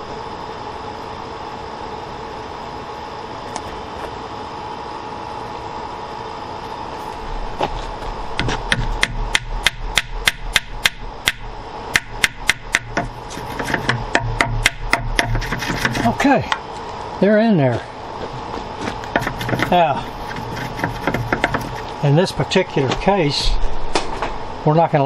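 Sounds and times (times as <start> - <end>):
steady background hum: 0.0 - 25.0
hammer tapping wooden dowels: 8.4 - 11.4, 12.0 - 16.1, 19.1 - 21.9.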